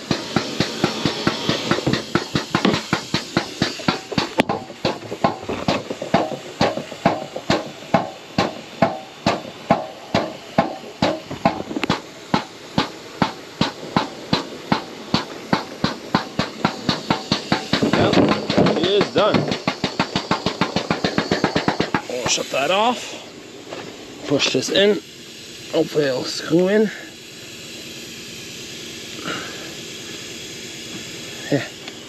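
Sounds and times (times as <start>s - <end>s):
pump clacking: 0.0s - 25.1s
pump hiss: 0.0s - 32.0s.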